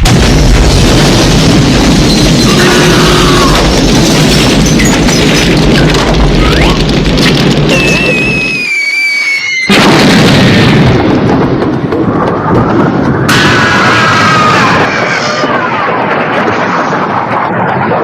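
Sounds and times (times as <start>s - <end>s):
cartoon whistles gliding downward: 7.7s - 9.7s.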